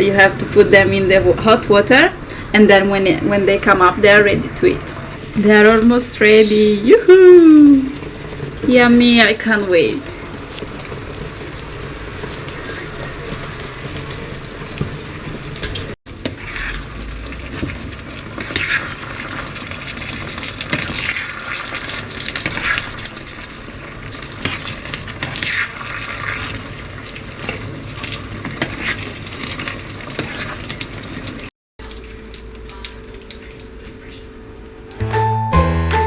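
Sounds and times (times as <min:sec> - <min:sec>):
food sizzling in a pan: 0:00.0 - 0:35.0
utensil scraping a pan: 0:15.6 - 0:17.8, 0:18.4 - 0:23.5, 0:24.2 - 0:31.0.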